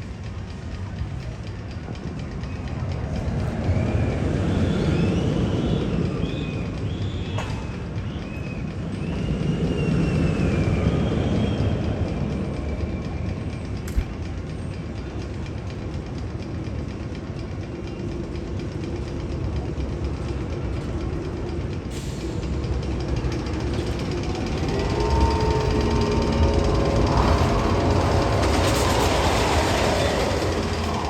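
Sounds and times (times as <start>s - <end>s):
rumbling train-like noise: 0.0s - 31.0s
faint whistling tones: 1.8s - 14.8s, 22.0s - 31.0s.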